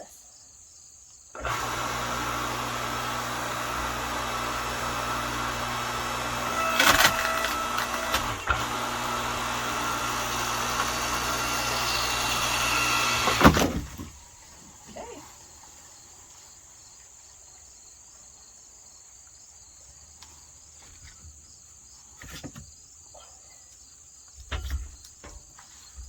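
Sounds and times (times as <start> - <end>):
log splitter motor running: 1.4 - 14.4
wood cracking: 1.4 - 14.6.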